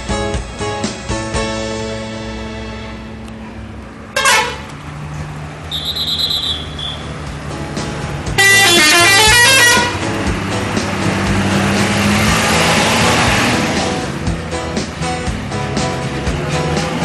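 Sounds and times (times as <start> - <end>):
engines and traffic rumble: 0.0 - 17.0
horn blast: 4.1 - 4.7, 5.7 - 7.2, 8.3 - 10.1
multi-tone musical air horn: 4.2 - 4.6, 8.4 - 10.0
high steady tone: 5.7 - 7.2.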